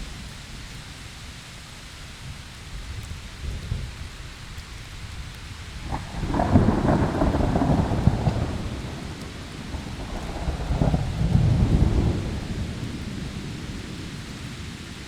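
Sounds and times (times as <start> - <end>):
hard rain: 0.0 - 15.0
thunder rumbling: 5.8 - 15.0.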